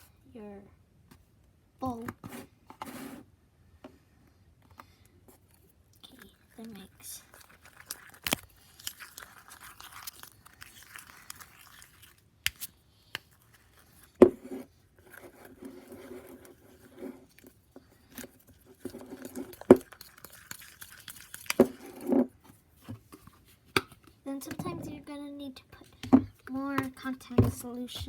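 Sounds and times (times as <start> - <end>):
slime squelching: 6.0 - 22.2.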